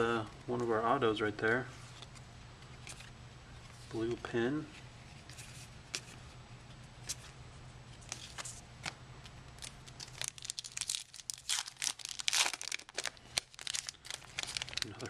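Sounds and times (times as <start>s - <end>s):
foil wrapper crinkling and tearing: 9.6s - 15.0s.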